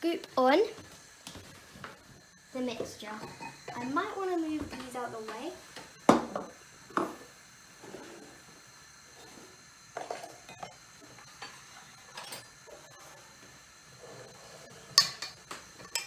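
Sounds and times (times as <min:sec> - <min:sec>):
dishes clinking on counter: 0:11.4 - 0:12.5, 0:15.0 - 0:16.0.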